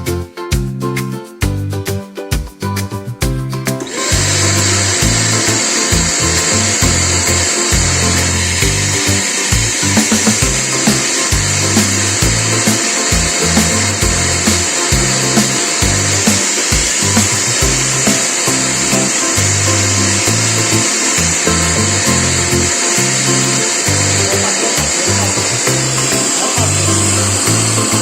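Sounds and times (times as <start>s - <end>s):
vacuum cleaner motor whining: 3.8s - 28.0s.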